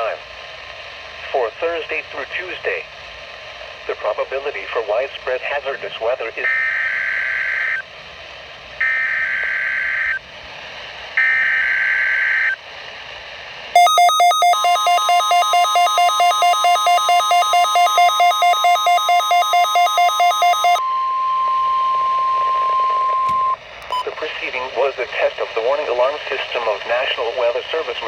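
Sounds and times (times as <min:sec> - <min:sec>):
buzzing data tones: 0:13.8 - 0:24.0
steady warning alarm tone: 0:13.8 - 0:24.0
rapidly pulsing alarm beeps: 0:13.8 - 0:24.1.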